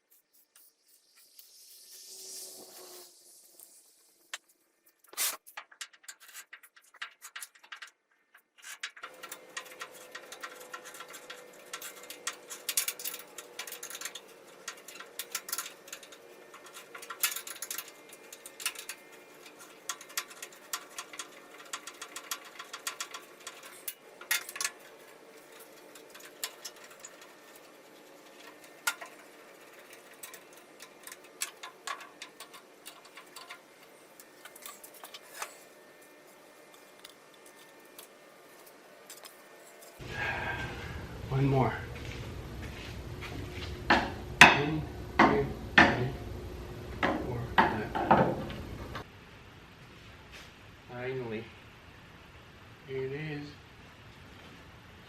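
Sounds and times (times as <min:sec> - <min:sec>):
faint background hum: 0:06.0 - 0:55.0
hand tools clicking on metal: 0:08.6 - 0:35.6.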